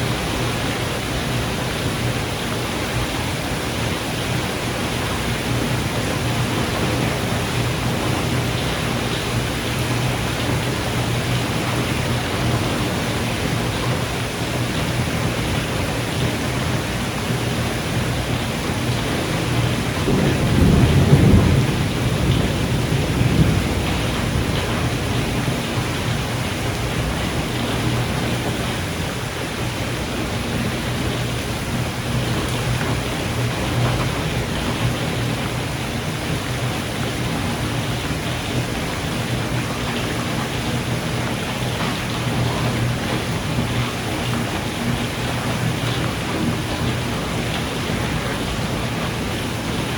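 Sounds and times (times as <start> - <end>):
heavy rain: 0.0 - 49.9
thunder rumble: 17.3 - 38.3.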